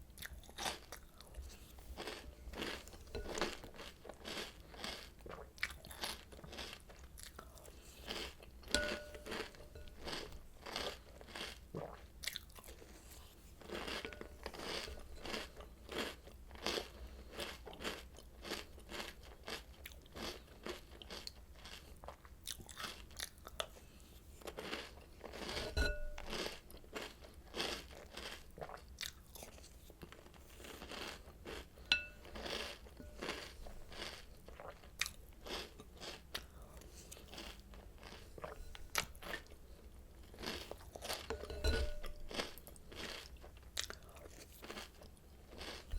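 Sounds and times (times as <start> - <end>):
cereal crunching and chewing: 0.0 - 45.9.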